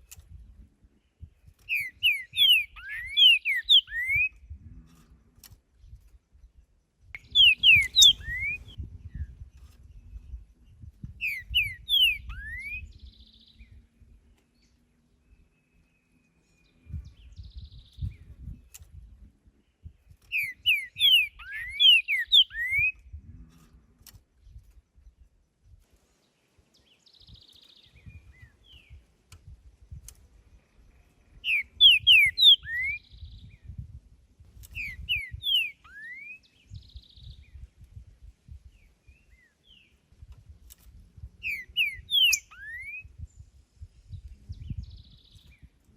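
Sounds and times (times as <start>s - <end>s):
bird whistling song: 1.7s - 4.5s, 7.2s - 10.4s, 11.1s - 13.8s, 20.2s - 23.1s, 31.3s - 33.9s, 34.7s - 37.7s, 41.4s - 45.7s.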